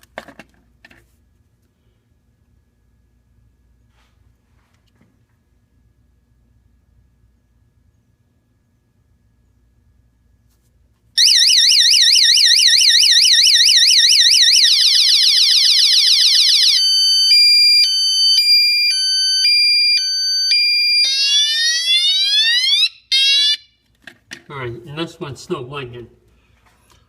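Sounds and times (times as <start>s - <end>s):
electronic alarm siren: 11.2s - 23.8s.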